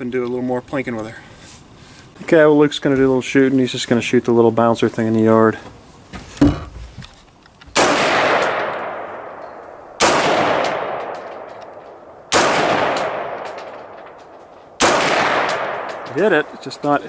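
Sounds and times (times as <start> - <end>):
rifle shots with echo: 7.8 - 17.0.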